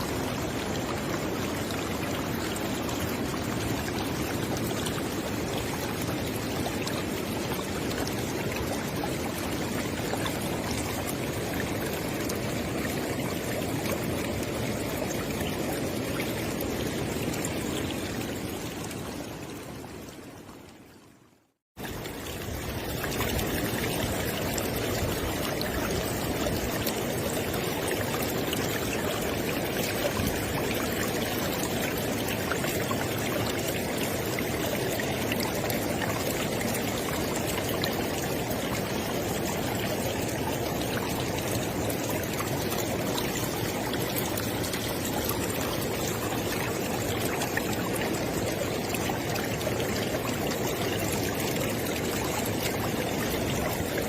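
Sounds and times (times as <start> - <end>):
river water flowing: 0.0 - 54.0.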